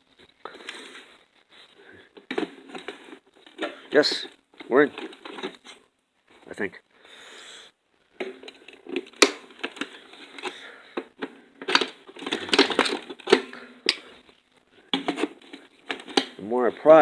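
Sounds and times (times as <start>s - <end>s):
plastic case cracking and creaking: 8.2s - 14.1s, 14.9s - 16.4s.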